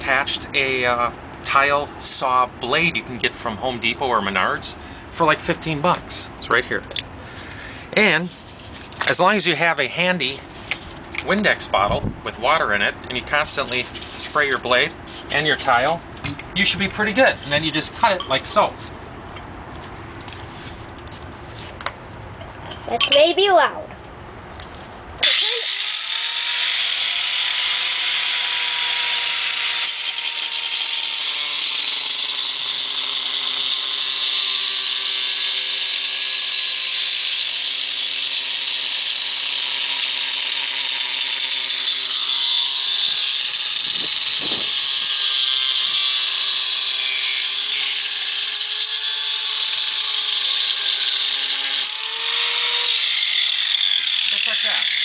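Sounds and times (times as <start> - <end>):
angle grinder cutting tile: 25.2 - 55.0.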